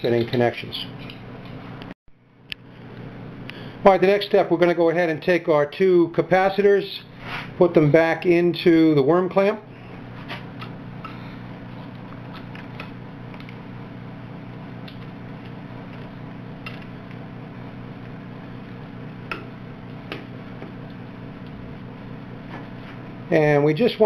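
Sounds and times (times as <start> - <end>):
low hum: 7.0 - 23.7.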